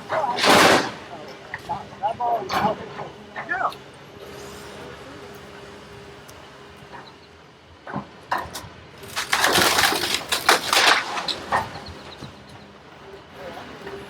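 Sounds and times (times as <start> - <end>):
sharp cracks: 9.0 - 11.6
house crashing and debris breaking: 9.0 - 12.3.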